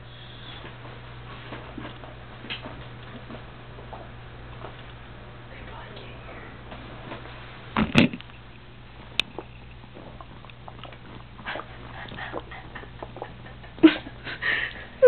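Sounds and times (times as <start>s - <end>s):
stomach growling and gurgling: 7.8s - 8.3s, 9.0s - 13.8s.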